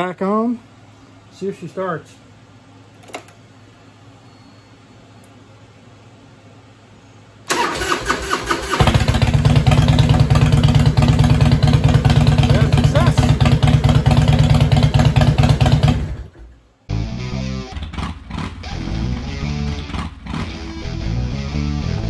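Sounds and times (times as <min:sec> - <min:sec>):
electric starter cranking: 0:07.5 - 0:10.6
motorcycle engine running: 0:08.7 - 0:16.6, 0:17.6 - 0:21.0.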